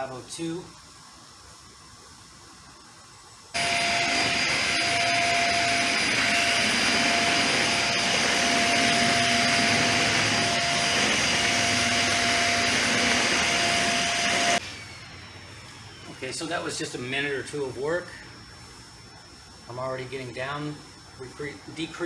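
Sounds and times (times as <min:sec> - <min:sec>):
vacuum cleaner running: 0:03.6 - 0:17.4.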